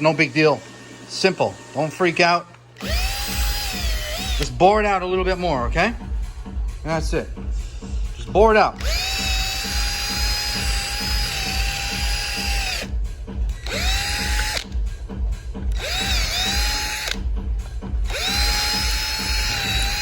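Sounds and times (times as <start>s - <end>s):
electric drill motor whine: 2.8s - 4.6s, 8.8s - 14.8s, 15.6s - 17.3s, 18.0s - 20.0s.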